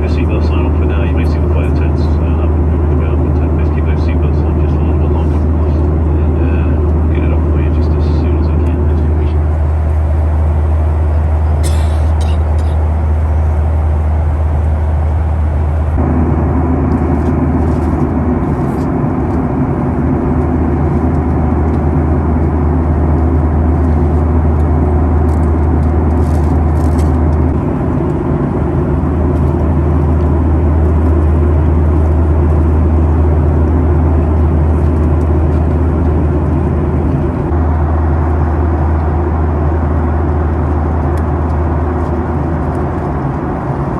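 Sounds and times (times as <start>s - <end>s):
airplane cabin drone: 0.0s - 43.9s
deep rumble: 0.0s - 43.9s.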